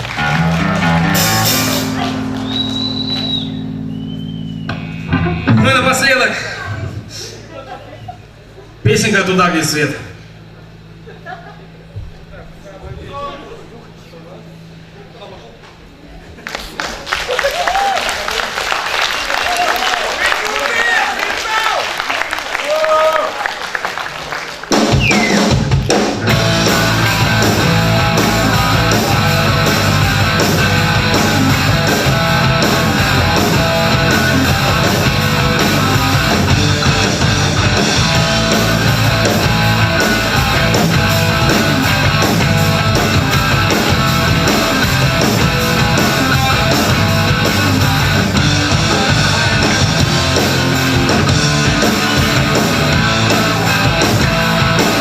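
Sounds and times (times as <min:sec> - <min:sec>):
electric guitar: 0:00.0 - 0:07.4, 0:24.7 - 0:55.0
rock band playing live: 0:00.0 - 0:07.4, 0:24.6 - 0:55.0
heavy bass: 0:00.0 - 0:16.2, 0:24.8 - 0:55.0.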